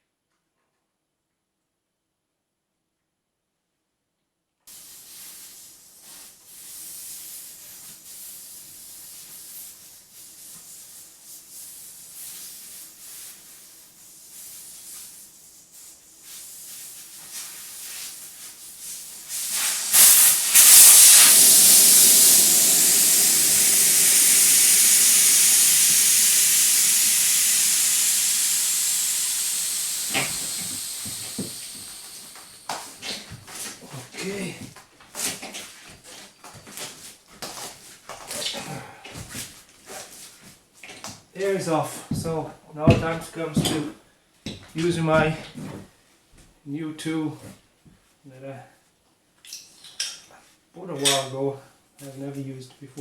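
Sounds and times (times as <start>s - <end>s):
air hissing out of tyre: 4.7s - 10.1s, 18.8s - 33.2s.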